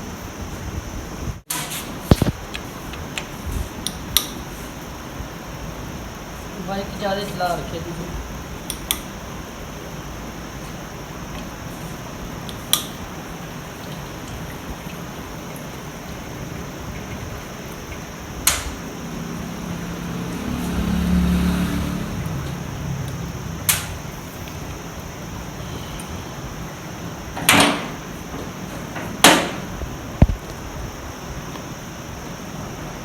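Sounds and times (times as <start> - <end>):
low rumble: 18.8 - 26.3.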